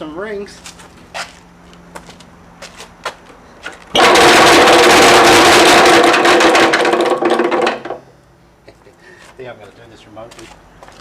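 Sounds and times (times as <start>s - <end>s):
air compressor clattering: 3.8s - 8.0s.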